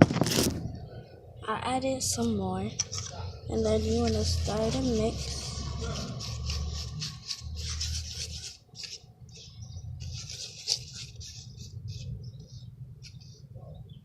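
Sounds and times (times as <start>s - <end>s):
slime squelching: 3.0s - 12.4s.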